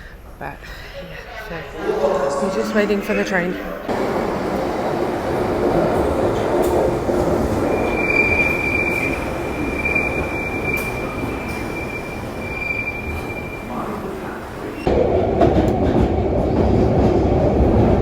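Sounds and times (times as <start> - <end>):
train wheels rumbling on rails: 3.9 - 18.0.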